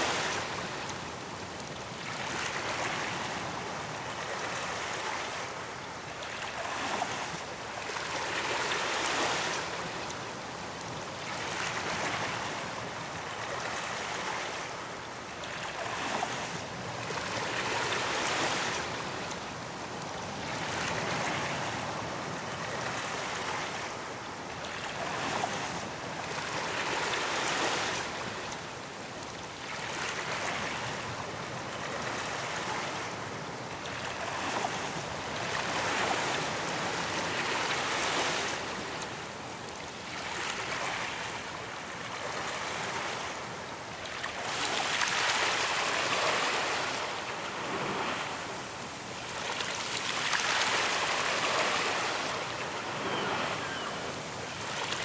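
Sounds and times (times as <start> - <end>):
ocean waves breaking: 40.1 - 55.0.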